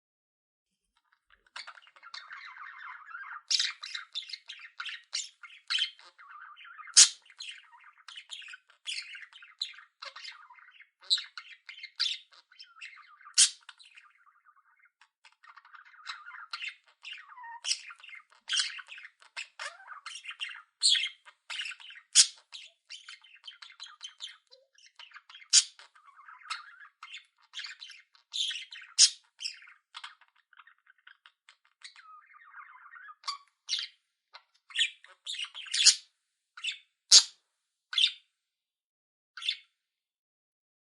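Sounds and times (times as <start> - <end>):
budgerigar warbling: 1.6 - 14.6.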